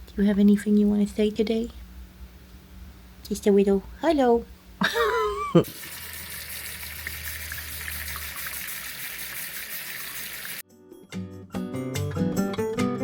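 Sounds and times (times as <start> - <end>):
acoustic guitar music: 10.7 - 13.0.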